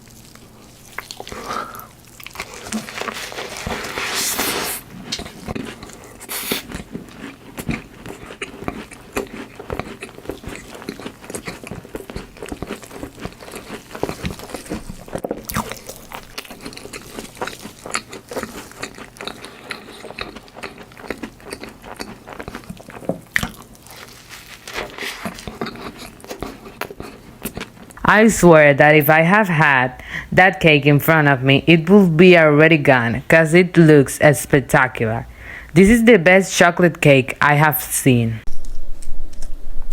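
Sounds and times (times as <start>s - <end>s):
person chewing and crunching: 0.0s - 28.2s.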